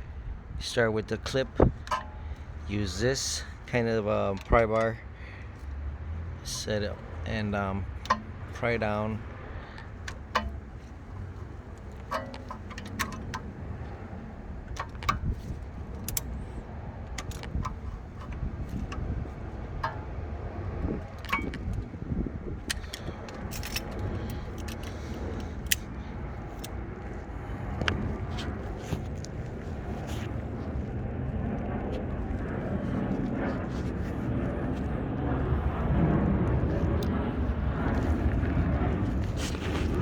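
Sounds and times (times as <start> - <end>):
steady low rumble: 0.0 - 40.0
metal tools clinking and scraping: 6.4 - 19.1, 19.8 - 20.2, 21.0 - 21.8, 22.6 - 25.9.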